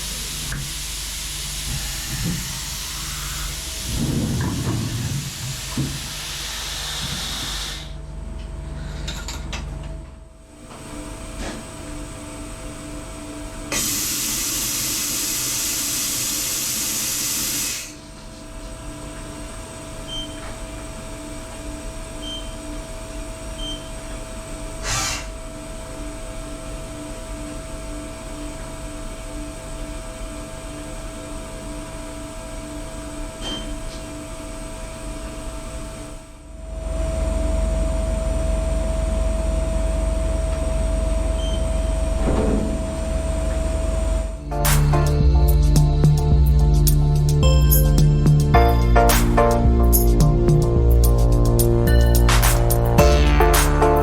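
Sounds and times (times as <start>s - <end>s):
compressed air blast: 1.6s - 8.0s, 13.7s - 18.0s, 24.8s - 25.3s
steady machine hum: 34.2s - 54.0s.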